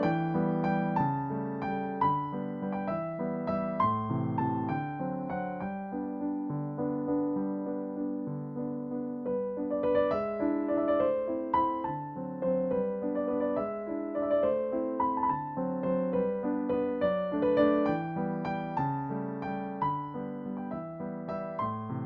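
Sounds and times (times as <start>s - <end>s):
piano music: 0.0s - 22.0s.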